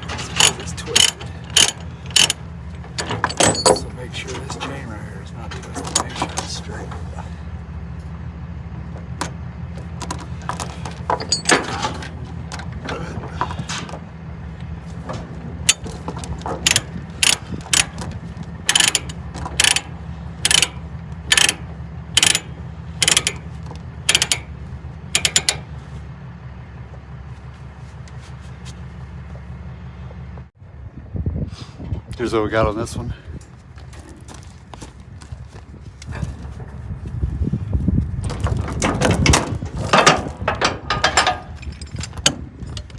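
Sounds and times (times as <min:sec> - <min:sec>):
chain clinking: 0:00.0 - 0:04.9, 0:09.2 - 0:14.0, 0:15.7 - 0:21.6, 0:38.2 - 0:42.9
ratchet clicks: 0:00.3 - 0:02.4, 0:15.7 - 0:24.5, 0:25.2 - 0:25.7.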